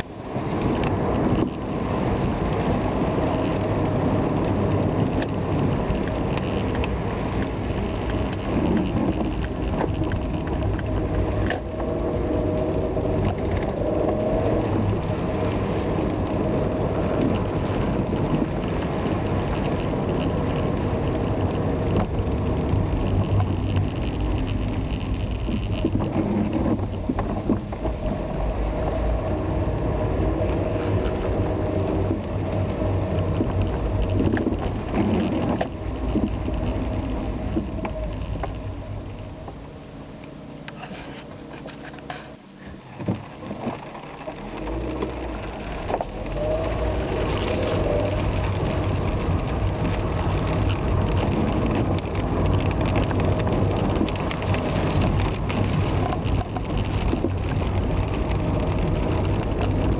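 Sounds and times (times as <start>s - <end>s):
rain: 0.0s - 59.9s
vehicle driving on wet road: 0.0s - 59.9s.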